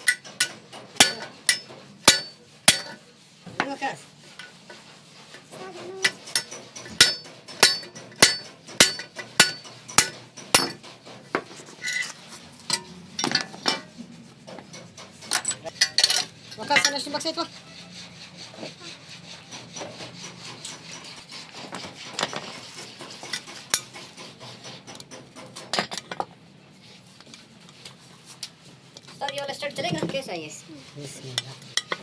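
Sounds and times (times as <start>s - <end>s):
hammer striking metal: 0.0s - 3.0s, 6.0s - 10.9s.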